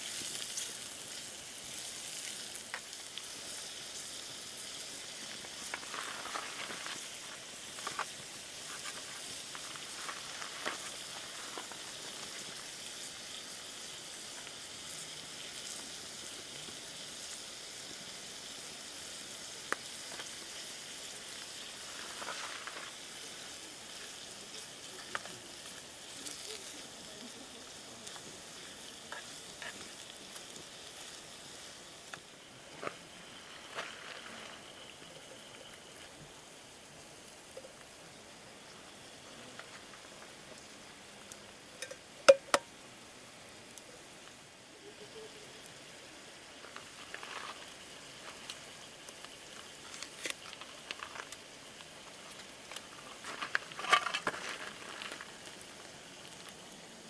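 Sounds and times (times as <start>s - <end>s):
food sizzling in frying: 0.0s - 57.0s
pops and crackles: 5.4s - 12.5s, 29.1s - 31.2s, 46.6s - 56.6s.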